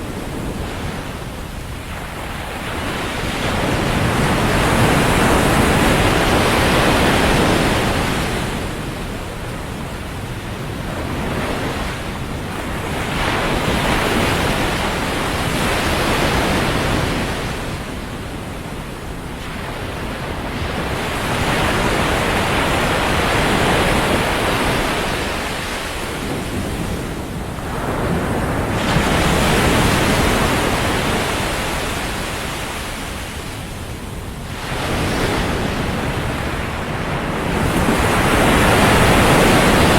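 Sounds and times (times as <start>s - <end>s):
surf breaking on beach: 0.0s - 39.9s.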